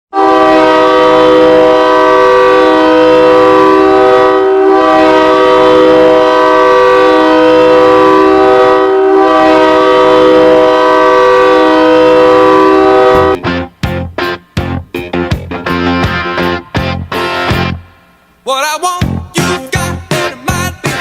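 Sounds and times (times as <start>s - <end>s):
hockey goal horn blasting: 0.1s - 13.4s.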